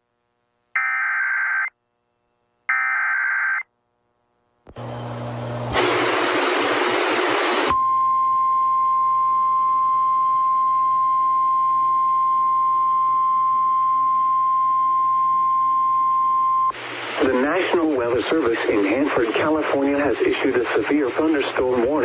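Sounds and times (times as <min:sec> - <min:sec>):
radio hiss: 0:16.7 - 0:22.0.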